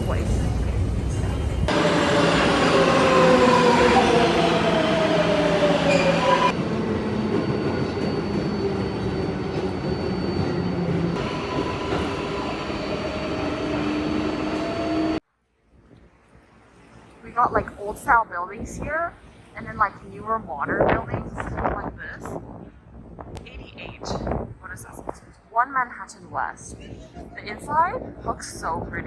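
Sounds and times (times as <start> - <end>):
subway train running on track: 0.0 - 15.2, 20.7 - 22.7
whining tones falling in pitch: 1.7 - 6.6.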